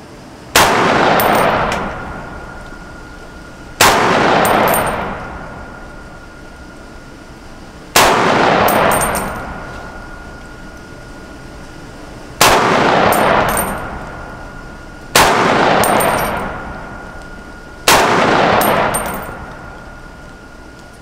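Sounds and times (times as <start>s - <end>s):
rifle shots echoing: 0.6s - 6.7s, 7.9s - 10.3s, 12.4s - 20.2s
light high clinks: 4.5s - 5.1s, 8.7s - 9.8s, 15.8s - 16.5s, 18.6s - 19.6s.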